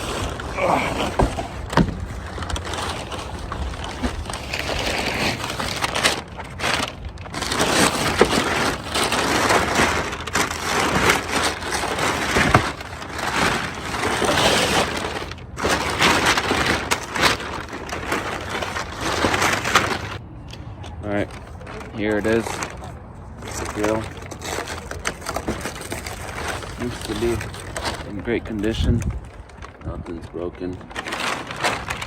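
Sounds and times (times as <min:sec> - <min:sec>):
cardboard box tearing: 0:00.0 - 0:20.2, 0:23.4 - 0:28.1, 0:30.9 - 0:32.0
plastic wrap crackling and rustling: 0:00.0 - 0:32.0.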